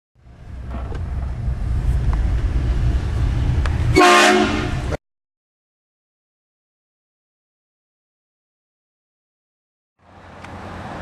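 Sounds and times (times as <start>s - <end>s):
car moving rumble: 0.2s - 5.0s, 10.0s - 11.0s
train horn blasting: 3.9s - 5.0s.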